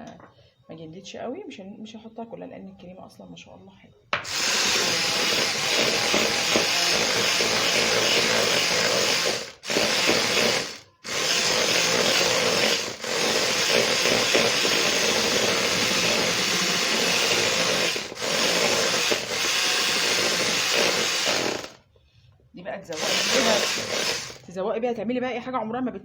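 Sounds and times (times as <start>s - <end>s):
electric mixer whipping cream: 4.3s - 21.8s, 23.0s - 24.4s.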